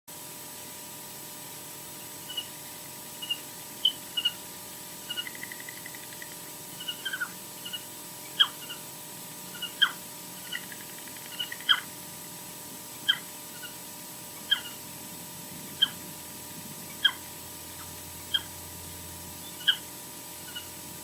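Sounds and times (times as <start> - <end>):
osprey whistled calls: 2.2 - 2.6, 3.2 - 4.4, 5.0 - 8.9, 9.5 - 11.9, 13.0 - 14.8, 15.7 - 16.0, 16.9 - 18.5, 19.4 - 20.7
soft bird chirps: 2.2 - 2.6, 3.2 - 4.4, 5.0 - 8.8, 9.5 - 11.9, 13.0 - 13.8, 14.4 - 14.8, 19.4 - 19.8, 20.4 - 20.7.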